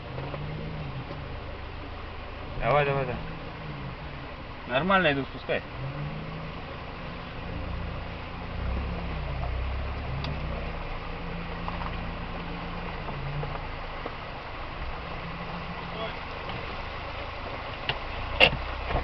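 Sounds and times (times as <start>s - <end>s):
low rumble: 0.0s - 19.0s
off-road vehicle engine: 0.0s - 19.0s
steady hiss: 0.0s - 19.0s.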